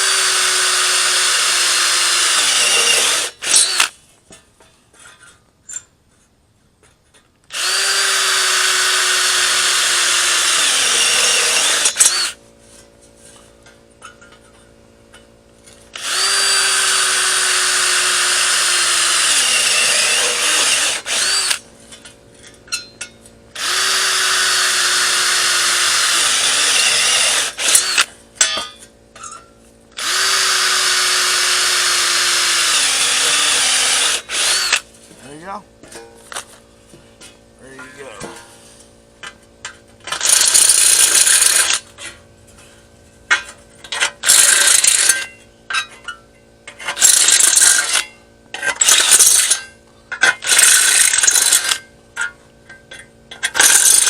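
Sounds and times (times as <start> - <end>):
power tool cutting sheet metal: 0.0 - 3.9, 7.5 - 12.4, 16.0 - 21.6, 23.6 - 28.1, 30.0 - 34.8, 40.1 - 41.8, 44.2 - 45.3, 46.9 - 48.1, 48.7 - 51.8, 53.4 - 54.0.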